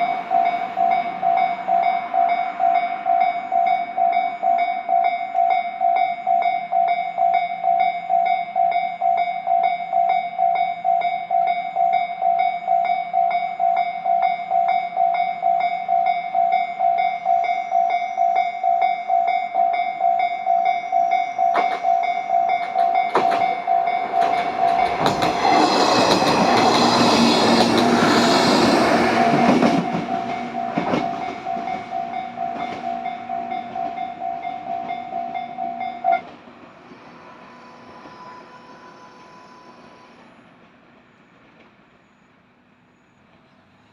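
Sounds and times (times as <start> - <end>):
level-crossing bell clanging: 0.0 - 36.3
train wheels clattering over rail joints: 21.5 - 35.4.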